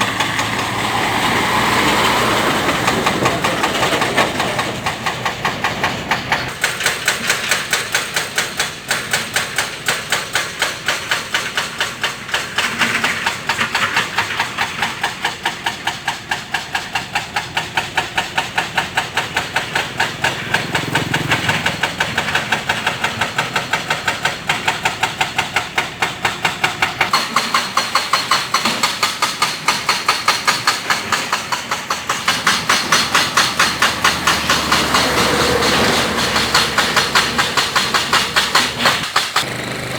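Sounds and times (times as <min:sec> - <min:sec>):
excavator engine running: 0:00.0 - 0:39.9
rapid hammer-like knocks: 0:02.8 - 0:39.5.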